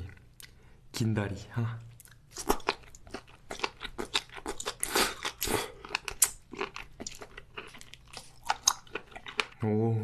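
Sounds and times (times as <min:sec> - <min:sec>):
person chewing crunchy food: 0:01.9 - 0:09.6.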